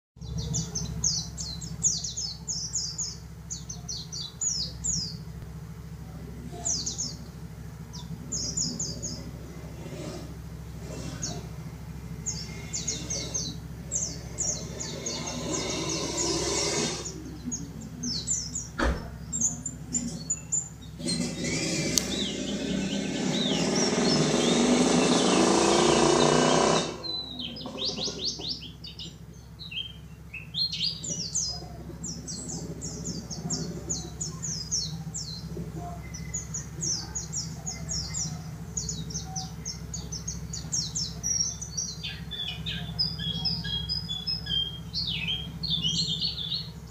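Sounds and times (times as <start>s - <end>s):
bird twittering song: 0.2s - 46.9s
loud rushing noise: 21.0s - 27.3s.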